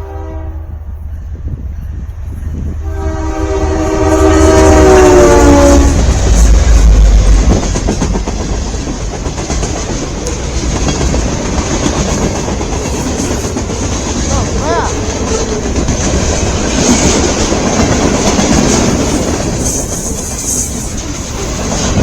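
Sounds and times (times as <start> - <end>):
locomotive horn blast: 0.0 - 0.9, 2.8 - 6.5
freight train rumbling and clattering: 0.0 - 22.0.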